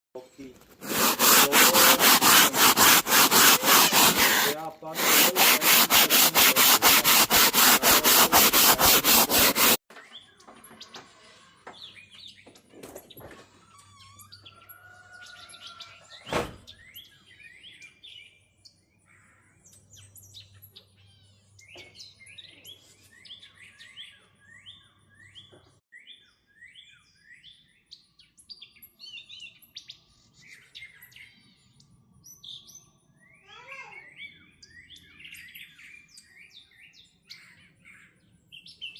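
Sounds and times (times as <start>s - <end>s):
hard scrubbing strokes: 0.6s - 9.8s.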